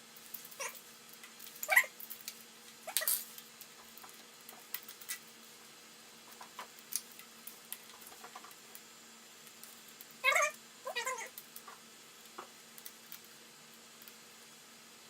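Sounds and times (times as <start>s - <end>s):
cat meowing: 10.2s - 11.3s.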